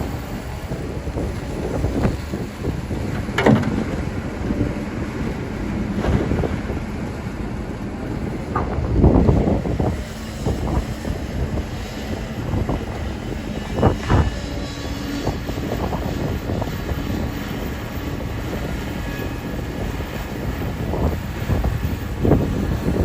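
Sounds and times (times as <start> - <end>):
excavator diesel engine running: 0.0 - 23.0
metal knocks and clunks: 3.1 - 4.2.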